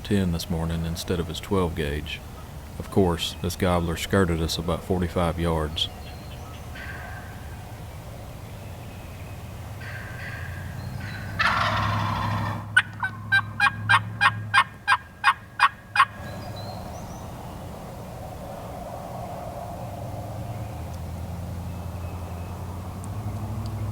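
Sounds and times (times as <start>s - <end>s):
turkey gobbling: 0.0s - 7.6s, 9.8s - 16.3s
turkey yelps: 9.8s - 16.2s.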